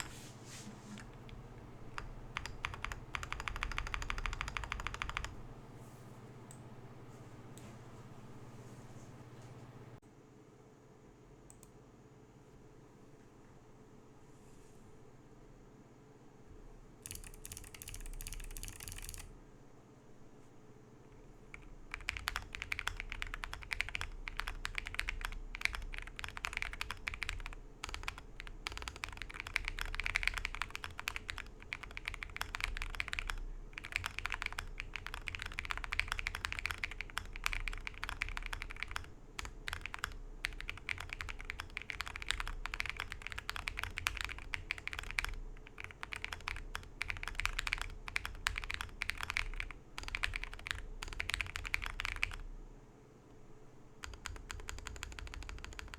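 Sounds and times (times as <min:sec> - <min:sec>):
mechanical keyboard typing: 0:01.0 - 0:05.5, 0:17.0 - 0:19.3, 0:21.5 - 0:52.4, 0:54.0 - 0:55.9.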